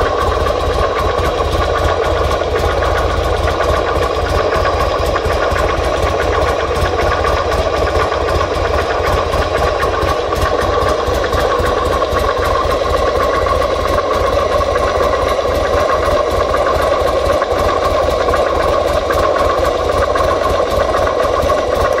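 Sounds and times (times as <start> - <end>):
motorcycle engine idling: 0.0 - 22.0.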